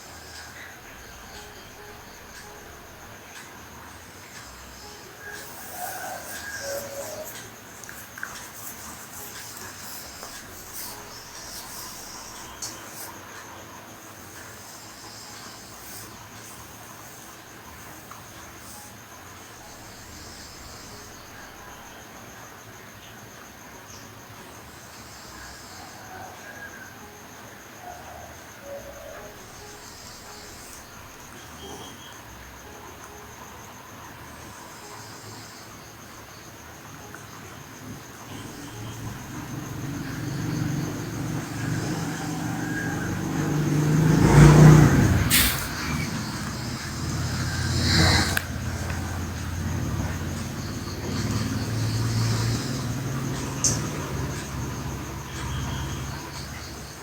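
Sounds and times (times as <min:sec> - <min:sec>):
low hiss: 0:29.2 - 0:57.0
man snoring: 0:38.4 - 0:53.3
sharp snort: 0:44.1 - 0:49.3.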